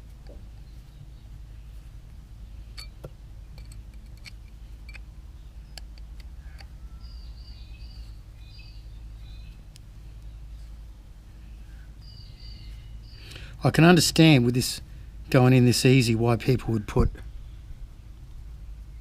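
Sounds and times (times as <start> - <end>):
steady low hum: 0.0 - 19.0
bird chirping: 4.5 - 13.5.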